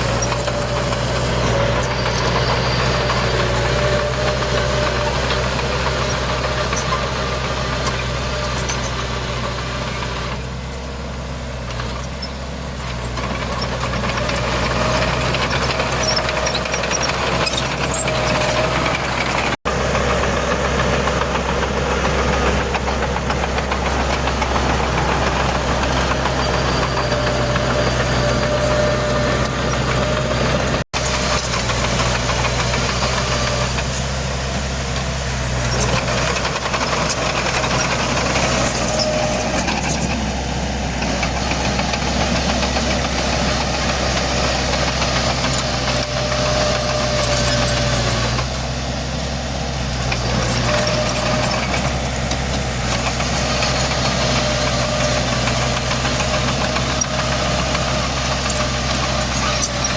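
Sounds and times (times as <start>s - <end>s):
diesel engine droning: 0.0s - 59.9s.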